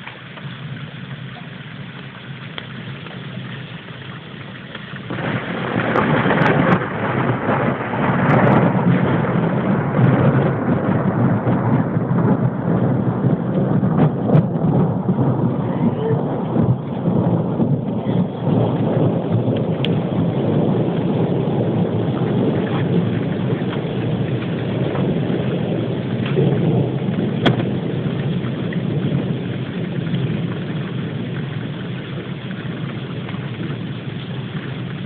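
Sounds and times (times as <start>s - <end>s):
rain: 0.0s - 35.0s
thunder rumbling: 0.0s - 35.0s.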